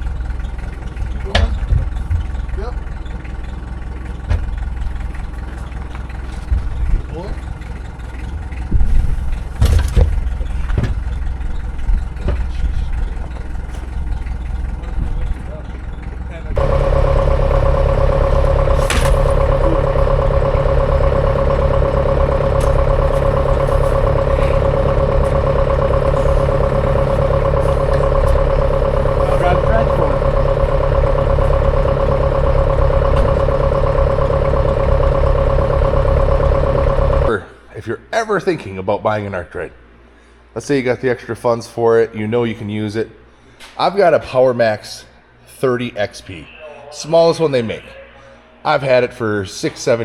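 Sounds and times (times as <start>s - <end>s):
tractor engine running: 0.0s - 37.6s.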